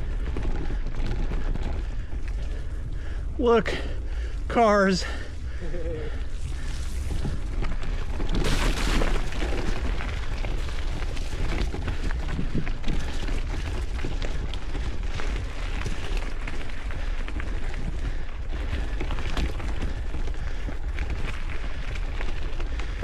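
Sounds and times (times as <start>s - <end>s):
bike rattling over bumps: 0.0s - 23.0s
tyres rolling on dirt trail: 0.0s - 23.0s.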